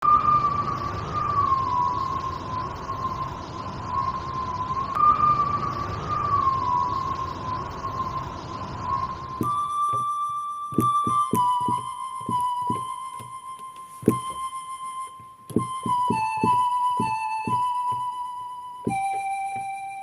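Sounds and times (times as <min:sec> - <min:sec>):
wind whistling through window: 0:00.0 - 0:10.2.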